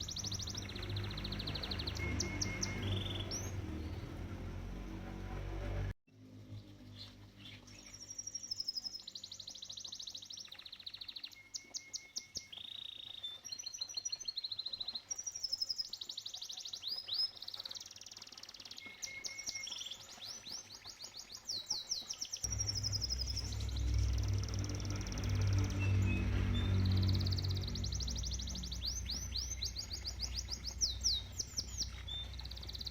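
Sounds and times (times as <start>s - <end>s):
canary singing trills: 0.0s - 4.3s, 6.9s - 32.9s
low steady rumble: 22.5s - 32.9s.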